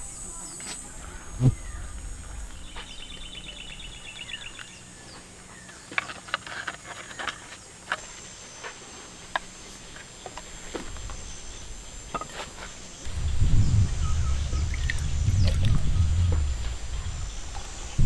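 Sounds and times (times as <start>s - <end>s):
high insect drone: 0.0s - 18.0s.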